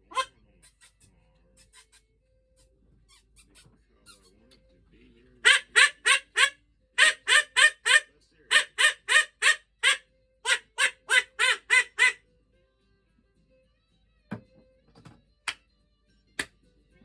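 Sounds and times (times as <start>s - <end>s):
duck quacking: 5.4s - 12.2s.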